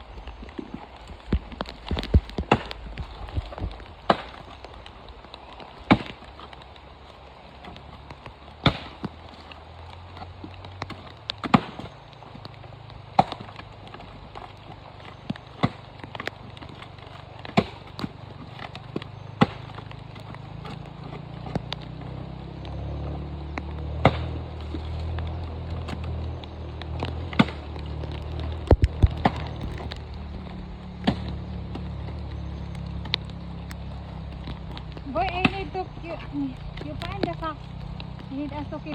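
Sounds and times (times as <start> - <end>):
low hum: 0.0 - 38.9
steady rain: 0.0 - 38.9
coconut shells being struck: 8.6 - 9.2, 10.7 - 12.0, 13.1 - 20.2, 23.6 - 24.4, 26.8 - 30.2, 31.0 - 31.8.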